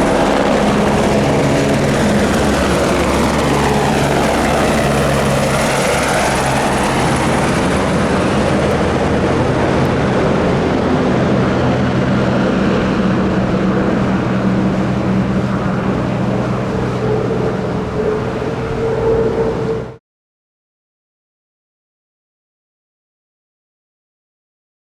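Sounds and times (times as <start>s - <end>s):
helicopter rotor beat: 0.0s - 20.0s
high turbine whine: 0.0s - 20.0s
turbine engine roar: 0.0s - 20.0s.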